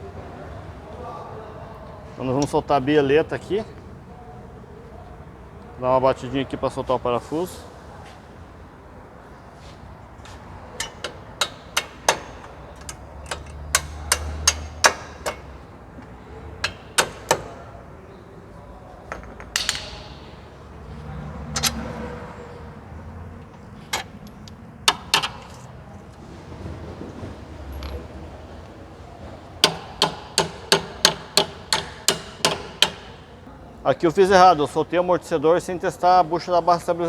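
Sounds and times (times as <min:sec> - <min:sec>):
hammer striking metal: 0:10.8 - 0:15.7, 0:16.6 - 0:17.7, 0:19.1 - 0:20.7, 0:29.6 - 0:33.4.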